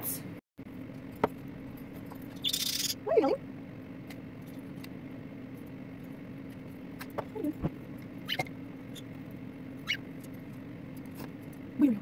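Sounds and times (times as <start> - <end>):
small birds chirping: 2.0 - 3.4, 6.4 - 12.0.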